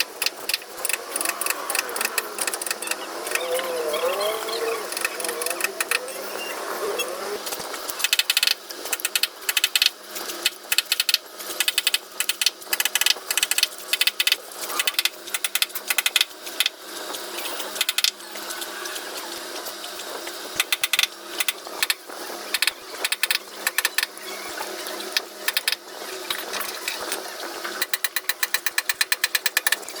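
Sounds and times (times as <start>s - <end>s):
steady mechanical noise: 0.0s - 30.0s
fast even ticks: 8.0s - 16.7s
sharp knocks and clicks: 20.6s - 22.0s, 27.8s - 29.8s.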